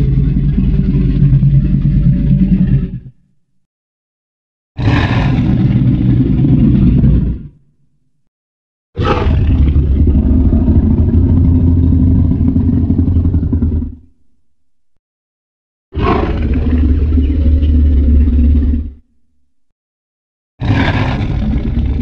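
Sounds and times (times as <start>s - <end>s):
deep rumbling creature roars: 0.0s - 3.2s, 4.8s - 7.6s, 9.0s - 14.2s, 16.0s - 19.1s, 20.6s - 22.0s.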